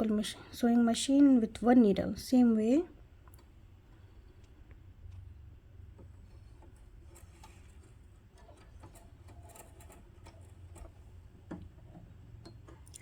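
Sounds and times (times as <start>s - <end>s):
sewing machine parts clicking: 6.6s - 13.0s.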